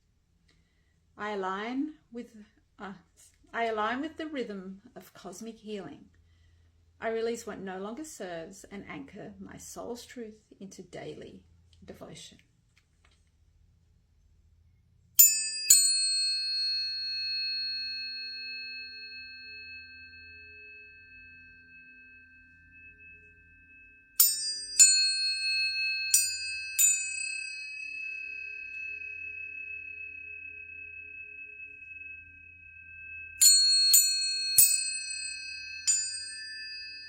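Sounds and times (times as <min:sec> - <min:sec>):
tuning forks ringing: 0:15.2 - 0:37.0.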